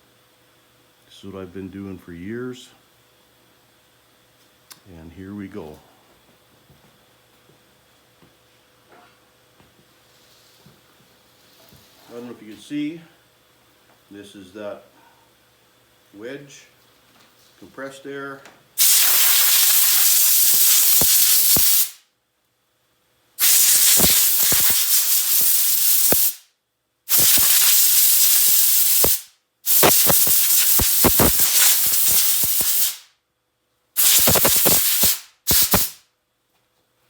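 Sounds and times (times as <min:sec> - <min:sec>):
compressed air blow gun hissing: 0:18.8 - 0:22.0, 0:23.4 - 0:26.4, 0:27.1 - 0:33.1, 0:34.0 - 0:36.0.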